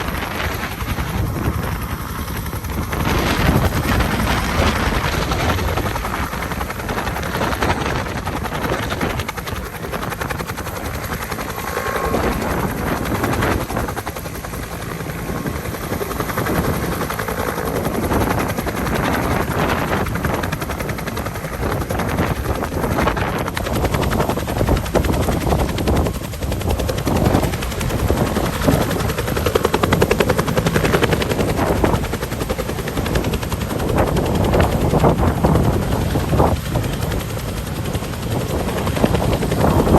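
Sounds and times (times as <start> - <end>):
helicopter rotor chopping: 0.0 - 39.9.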